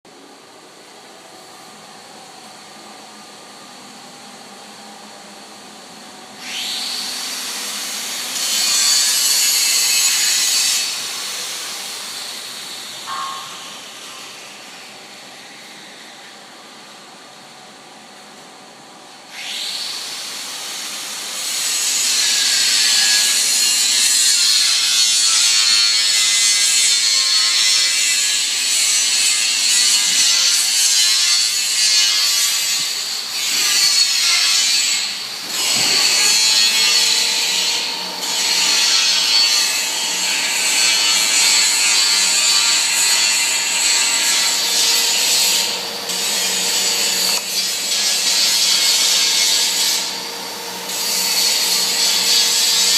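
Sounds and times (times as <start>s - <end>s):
lathe cutting with hissing scrape: 27.8s - 52.9s.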